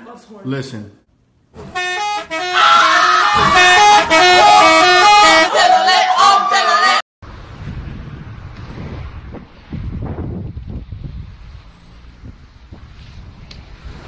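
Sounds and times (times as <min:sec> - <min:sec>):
musical bus horn tune: 0:01.6 - 0:06.3
crowd shouting: 0:02.2 - 0:07.0
wind noise on microphone: 0:07.2 - 0:14.0.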